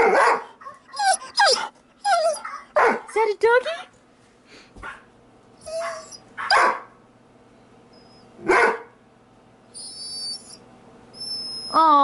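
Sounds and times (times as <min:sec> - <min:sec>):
dog barking: 0:00.0 - 0:00.9, 0:02.3 - 0:03.1, 0:04.8 - 0:05.1, 0:05.8 - 0:07.0, 0:08.4 - 0:09.0
dog yipping: 0:00.0 - 0:03.1, 0:05.6 - 0:06.9, 0:08.0 - 0:08.9, 0:09.8 - 0:10.6, 0:11.2 - 0:11.9
dog whining: 0:00.6 - 0:03.0, 0:05.6 - 0:06.8, 0:07.9 - 0:08.4, 0:09.7 - 0:12.0.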